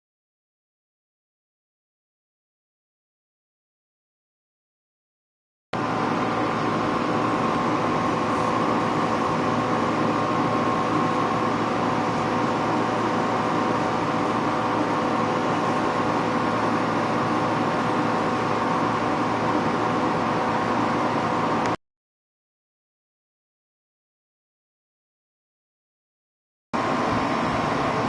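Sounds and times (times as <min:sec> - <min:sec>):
air conditioner fan rush: 0:05.8 - 0:21.8, 0:26.8 - 0:28.0
compressor hum: 0:05.8 - 0:21.8, 0:26.8 - 0:28.0.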